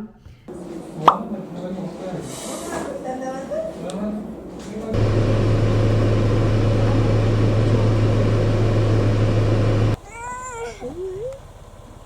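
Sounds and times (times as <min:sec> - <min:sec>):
electric appliance humming: 0:04.8 - 0:10.0.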